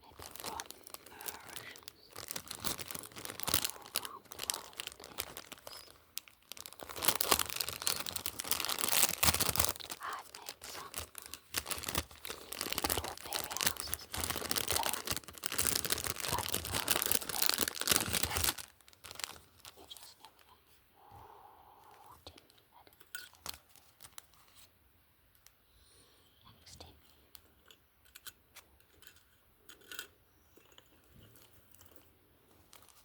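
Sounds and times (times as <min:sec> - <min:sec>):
packaging crinkling and tearing: 0:00.0 - 0:20.5, 0:23.3 - 0:24.7, 0:31.4 - 0:33.0.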